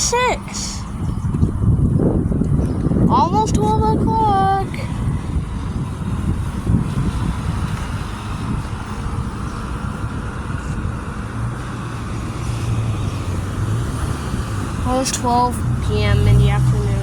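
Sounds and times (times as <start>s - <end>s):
low engine hum: 0.0s - 17.0s
vehicles passing on a street: 0.0s - 17.0s.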